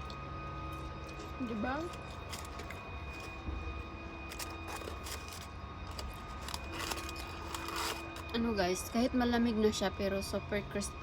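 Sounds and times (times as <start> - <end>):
chewing crispy food: 0.0 - 8.3
low steady hum: 0.0 - 11.0.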